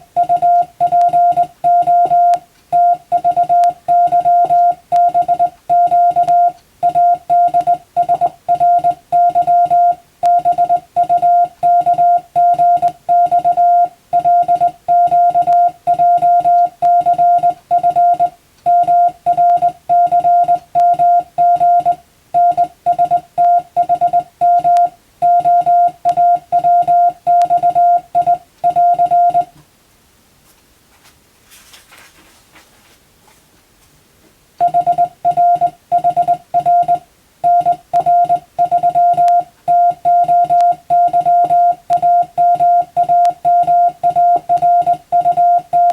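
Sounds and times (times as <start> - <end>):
morse code beeps: 0.0 - 29.5, 34.6 - 45.9
faint rustle: 30.4 - 34.4.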